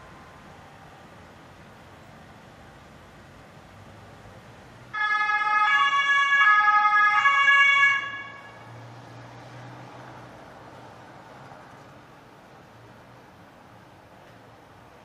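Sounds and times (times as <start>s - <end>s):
faint background noise: 0.0s - 15.0s
two-tone ambulance siren: 4.9s - 8.8s.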